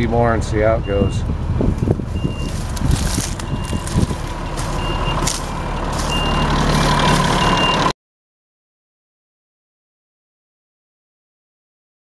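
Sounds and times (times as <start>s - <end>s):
tractor engine running: 0.0s - 7.9s
round baler working: 0.4s - 7.9s.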